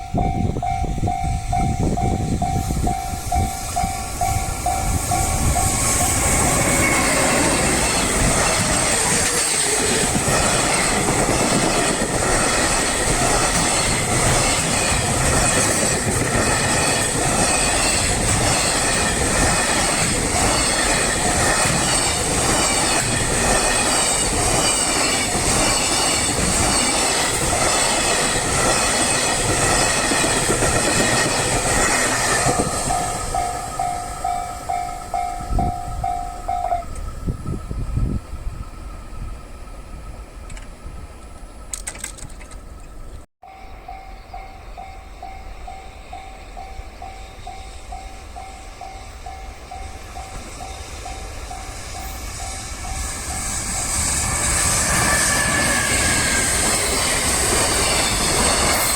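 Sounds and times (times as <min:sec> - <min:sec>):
level crossing warning bell ringing: 0:00.0 - 0:37.1, 0:43.4 - 0:54.0
train wheels clattering over rail joints: 0:02.4 - 0:34.0, 0:40.4 - 0:42.8.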